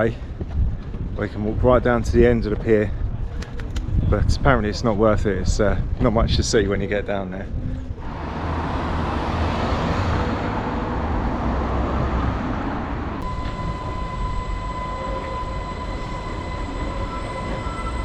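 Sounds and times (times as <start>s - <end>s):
electric train whine: 8.0s - 18.0s.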